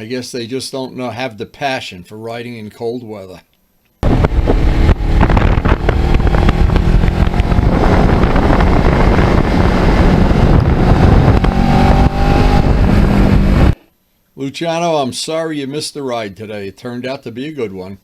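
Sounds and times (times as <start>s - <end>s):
motorcycle engine running: 4.0s - 13.8s
wind rush on microphone: 4.0s - 13.8s.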